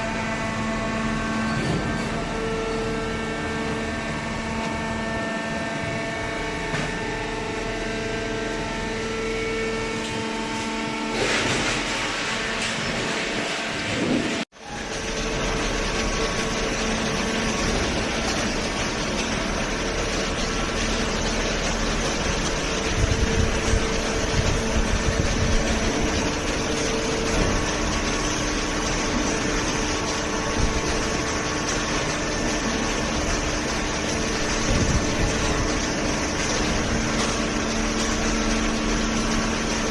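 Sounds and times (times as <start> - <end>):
baler motor humming: 12.4 - 39.9.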